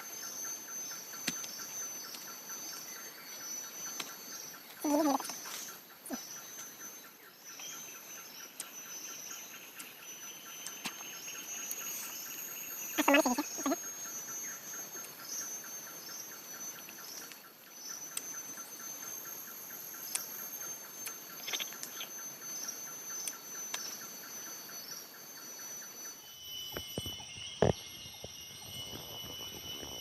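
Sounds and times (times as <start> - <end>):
fast pulsing insect chirp: 0.0 - 30.0
high-pitched insect buzzes: 8.7 - 16.7, 17.8 - 30.0.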